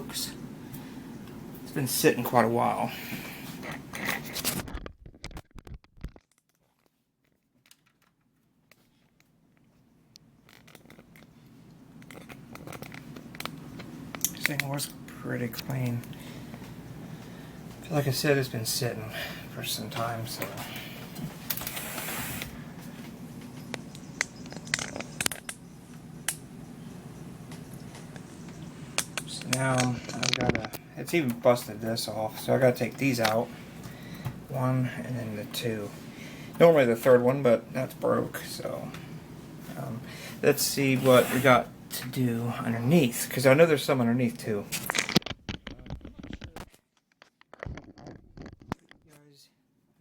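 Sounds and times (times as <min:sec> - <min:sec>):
clicks knocks and scrapes: 0:44.8 - 0:49.0.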